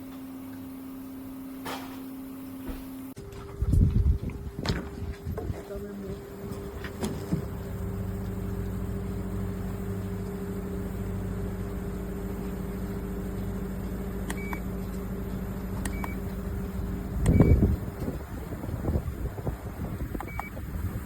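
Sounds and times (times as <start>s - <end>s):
fan motor hum and air whoosh: 0.0s - 21.0s
short electronic beeps: 20.2s - 20.6s.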